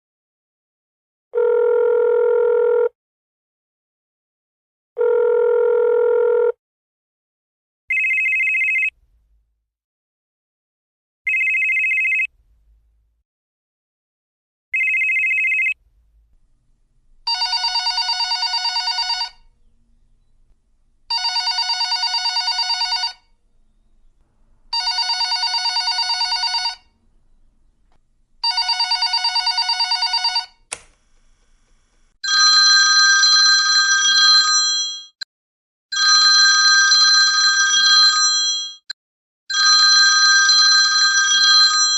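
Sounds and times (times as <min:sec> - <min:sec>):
telephone trilling rings: 0:01.4 - 0:02.9, 0:05.0 - 0:06.6, 0:07.9 - 0:08.9, 0:11.3 - 0:12.3, 0:14.8 - 0:15.8, 0:17.3 - 0:19.5, 0:21.1 - 0:23.3, 0:24.7 - 0:27.0, 0:28.4 - 0:30.6, 0:32.2 - 0:35.2, 0:36.0 - 0:38.9, 0:39.5 - 0:41.9
steady bright telephone ring: 0:17.3 - 0:19.5, 0:21.1 - 0:23.3, 0:24.7 - 0:26.9, 0:28.4 - 0:30.6, 0:32.2 - 0:35.2.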